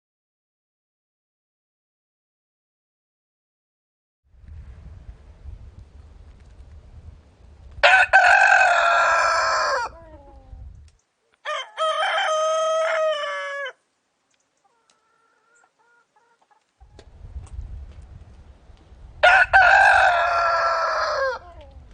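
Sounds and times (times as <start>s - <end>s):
low rumble: 4.3s - 7.8s
rooster crowing: 7.8s - 10.4s, 11.4s - 13.8s, 19.2s - 21.7s.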